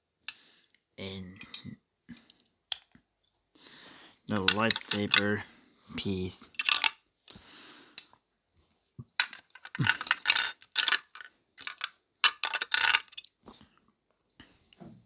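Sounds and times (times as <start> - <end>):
plastic toy pieces clattering: 4.3 - 5.4, 6.5 - 7.0, 9.2 - 13.4.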